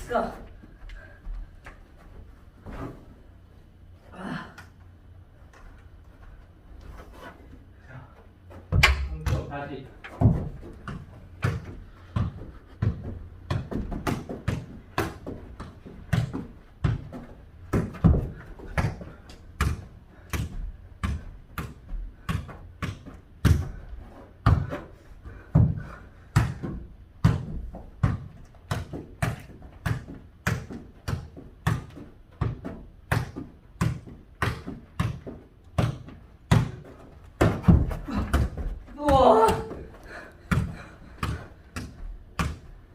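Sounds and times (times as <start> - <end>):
ball bouncing on hard floor: 8.7 - 9.5, 10.1 - 23.8, 25.5 - 39.8, 40.5 - 42.8.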